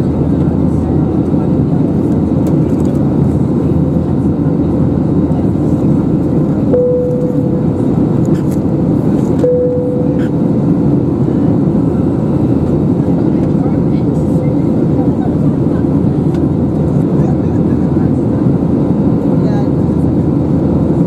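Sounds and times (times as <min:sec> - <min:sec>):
airplane cabin engine noise: 0:00.0 - 0:21.0
short chimes: 0:06.8 - 0:07.8.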